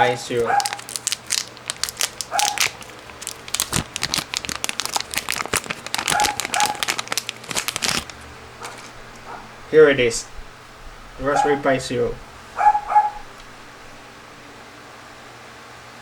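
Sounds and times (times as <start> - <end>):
packaging crinkling: 0.0 - 9.4.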